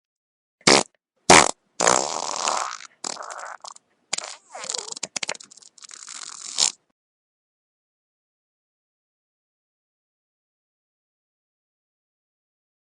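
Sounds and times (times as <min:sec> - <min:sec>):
wet fart noises: 0:00.6 - 0:06.8.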